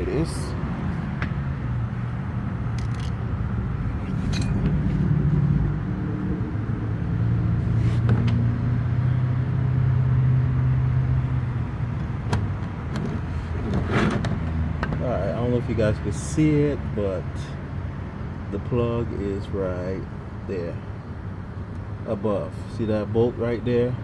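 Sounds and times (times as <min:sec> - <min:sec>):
low mechanical hum: 0:00.0 - 0:14.5
handling clicks: 0:02.7 - 0:03.2.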